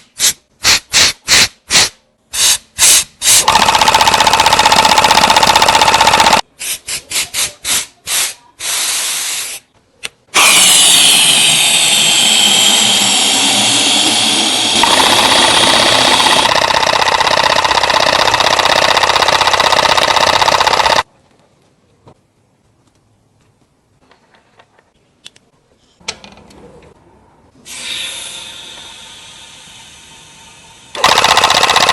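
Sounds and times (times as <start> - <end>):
small electric motor whining: 10.4 - 21.0.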